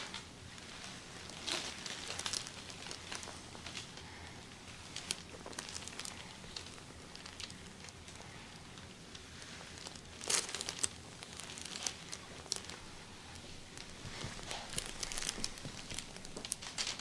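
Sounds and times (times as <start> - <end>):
fabric rustling and crinkling: 0.0 - 17.0.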